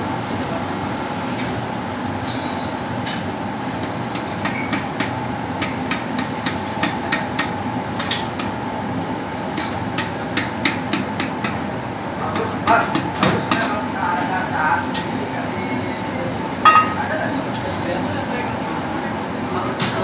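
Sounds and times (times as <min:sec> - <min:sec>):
hammer tapping metal: 0:03.8 - 0:08.6, 0:09.6 - 0:11.6.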